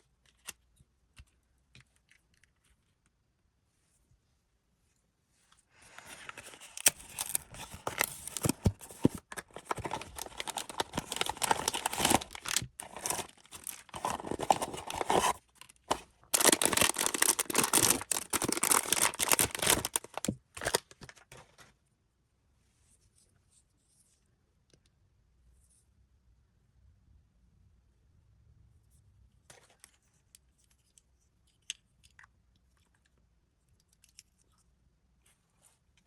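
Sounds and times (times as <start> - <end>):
packaging tearing and crinkling: 6.4 - 21.2.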